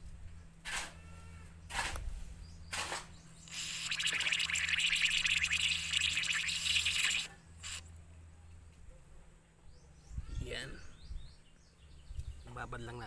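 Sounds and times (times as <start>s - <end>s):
aerosol can spraying: 3.5s - 7.8s.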